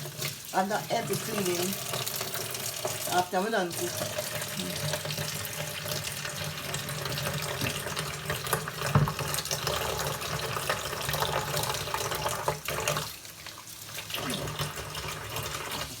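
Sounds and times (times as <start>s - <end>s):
tap running into sink: 3.9s - 13.2s
knock: 8.9s - 9.2s.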